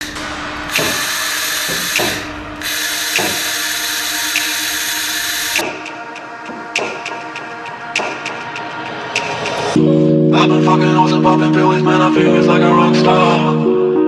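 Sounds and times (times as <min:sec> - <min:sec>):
laser cleaner crackling hiss: 0:00.8 - 0:05.6
music with steady beat: 0:03.1 - 0:03.5, 0:04.2 - 0:14.0.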